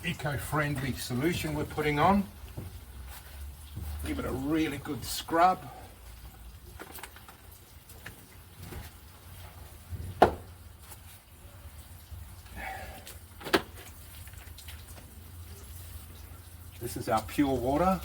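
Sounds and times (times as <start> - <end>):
sharp knocks: 10.0 - 10.5.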